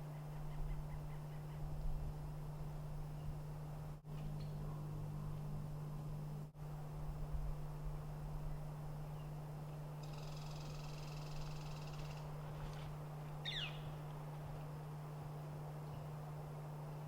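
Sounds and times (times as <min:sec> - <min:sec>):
steady low hum: 0:00.0 - 0:17.0
small birds calling: 0:10.0 - 0:14.0.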